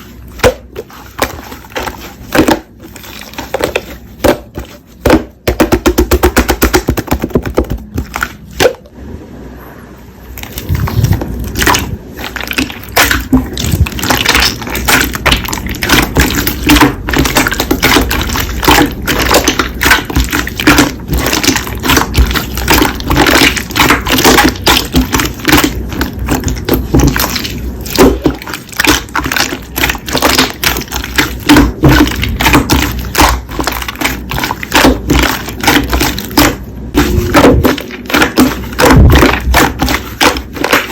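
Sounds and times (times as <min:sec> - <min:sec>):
slime crackling and popping: 0:10.4 - 0:40.9.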